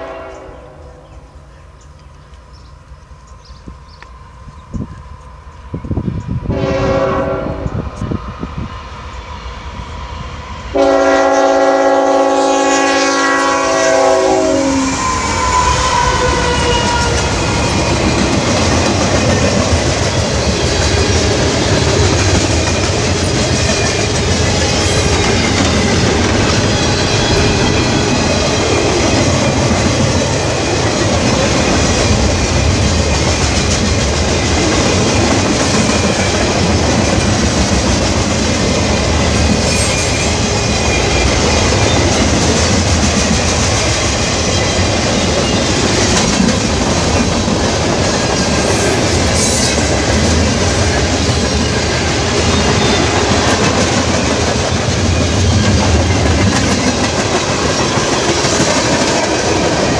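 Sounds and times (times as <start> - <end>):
locomotive air horn chord: 0.0 - 1.0, 6.5 - 7.8, 10.7 - 17.2
railcars rolling and clacking: 0.0 - 59.9.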